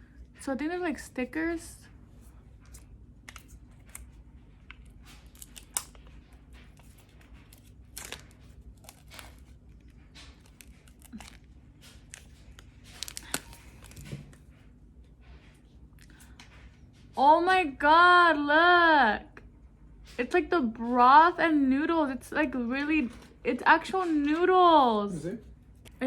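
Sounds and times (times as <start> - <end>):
plastic wrap crinkling: 2.6 - 14.6.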